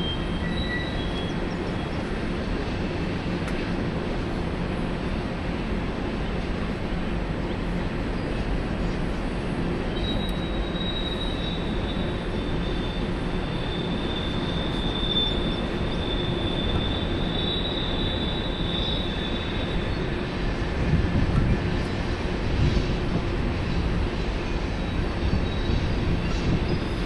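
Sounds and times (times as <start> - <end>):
high wheel squeal: 0.0 - 1.5, 9.9 - 20.0, 24.8 - 27.0
freight train wheels rumbling on rail: 0.0 - 27.0.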